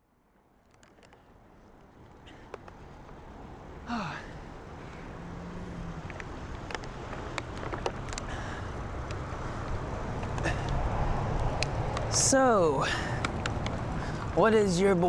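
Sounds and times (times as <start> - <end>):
man sighing: 3.8 - 4.5, 10.4 - 10.8.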